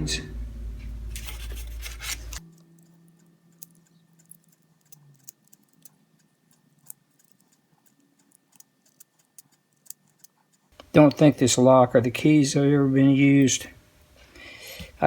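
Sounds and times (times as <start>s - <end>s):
small parts clicking: 2.4s - 10.9s.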